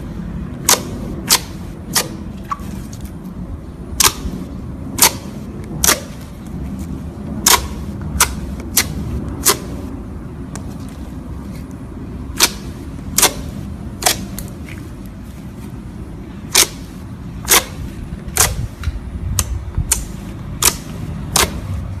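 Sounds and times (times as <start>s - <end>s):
steady low rumble: 0.0s - 22.0s.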